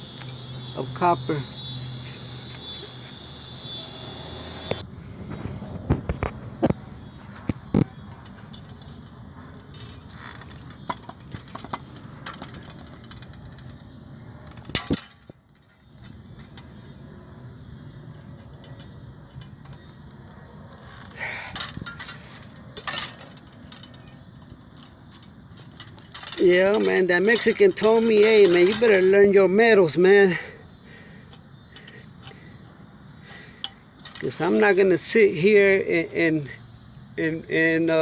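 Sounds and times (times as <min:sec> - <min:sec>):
metal parts clinking and knocking: 0:07.5 - 0:16.6, 0:20.8 - 0:29.4, 0:33.6 - 0:35.2.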